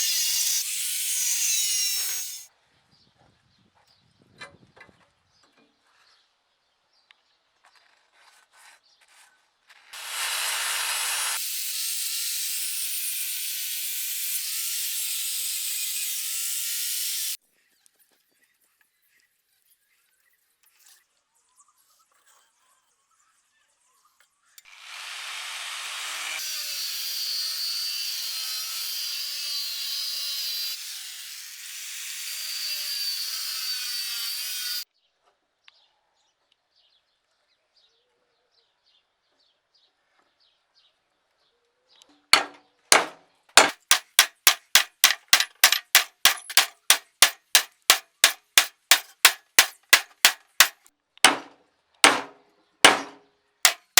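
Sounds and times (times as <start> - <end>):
power tool on steel: 0.0 - 2.5, 10.0 - 17.4, 24.6 - 34.8, 43.6 - 50.8, 53.7 - 53.9
hammer striking steel: 42.4 - 53.9.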